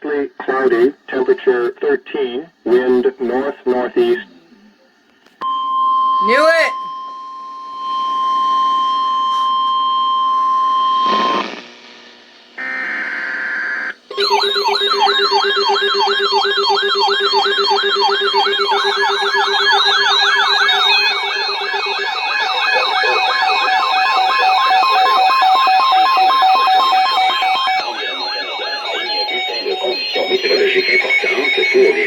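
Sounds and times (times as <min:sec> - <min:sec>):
harsh buzzing burst: 0:10.9 - 0:32.0
siren-like alarm rising sweeps: 0:12.6 - 0:32.0
steady alert tone: 0:14.1 - 0:32.0.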